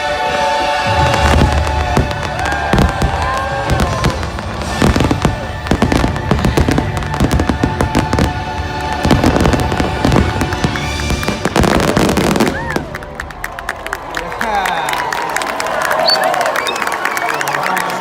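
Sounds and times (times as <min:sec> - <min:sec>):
soundtrack music: 0:00.0 - 0:13.6
fireworks bangs and crackles: 0:00.0 - 0:14.1.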